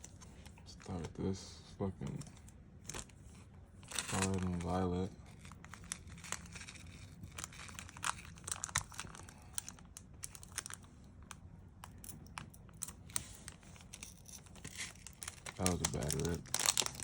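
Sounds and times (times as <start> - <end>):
foil wrapper crinkling and tearing: 3.8 - 11.0, 12.7 - 17.0.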